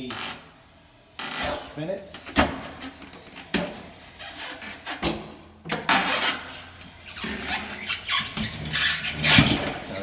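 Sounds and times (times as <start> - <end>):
tire rubbing and scraping on metal arm: 4.1 - 5.0, 5.9 - 10.0.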